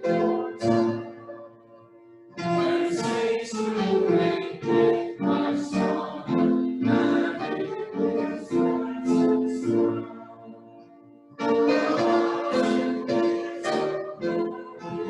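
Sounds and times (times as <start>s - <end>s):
congregation singing a hymn: 2.4s - 15.0s.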